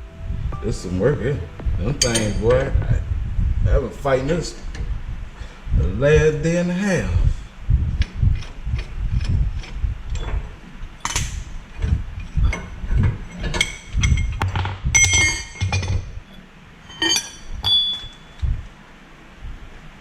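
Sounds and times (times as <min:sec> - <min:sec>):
metal tools clinking: 0:02.0 - 0:02.7, 0:08.4 - 0:18.4.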